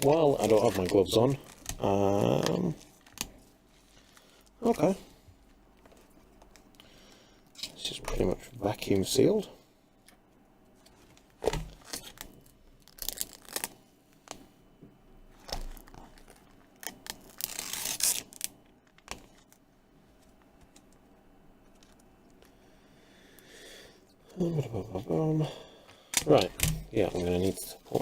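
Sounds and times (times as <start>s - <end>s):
plastic packaging tearing and crinkling: 0.0s - 4.3s, 11.4s - 13.8s, 15.4s - 19.6s.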